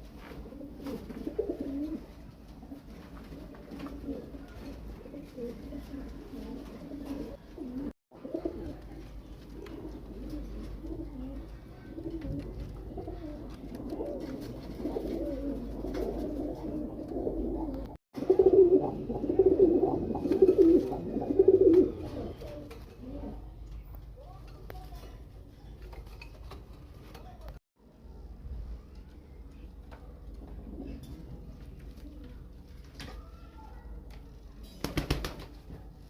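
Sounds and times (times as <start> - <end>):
pigeons cooing: 0.4 - 23.5.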